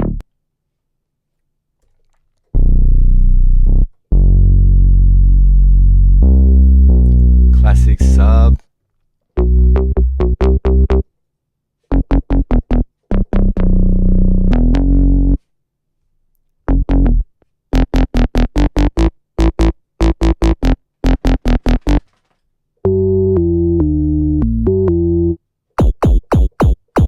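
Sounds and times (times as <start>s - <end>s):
synth sub bass notes: 2.6s - 8.5s
bright synth bass held: 6.2s - 8.6s.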